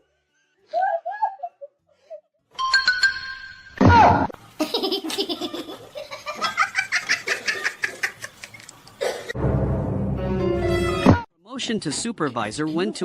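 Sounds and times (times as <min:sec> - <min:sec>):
person laughing in bursts: 0:04.6 - 0:09.4, 0:12.2 - 0:13.0.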